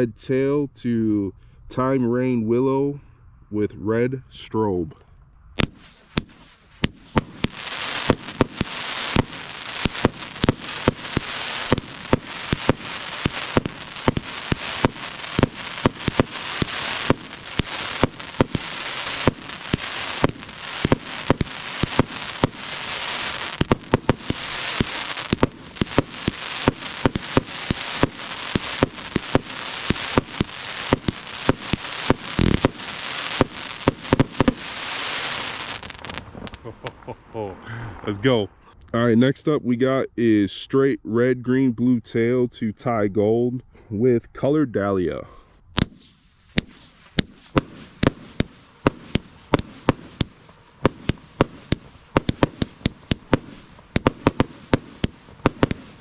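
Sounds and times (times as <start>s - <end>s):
deep firework boom: 5.6s - 37.3s
fireworks hissing and popping: 5.6s - 37.8s, 45.8s - 56.0s.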